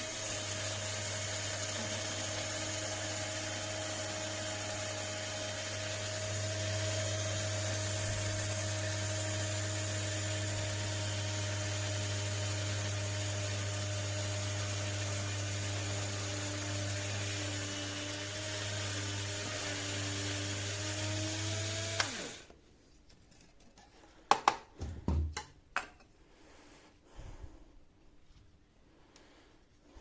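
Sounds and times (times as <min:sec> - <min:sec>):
coffee grinder motor whining: 0:00.0 - 0:22.5.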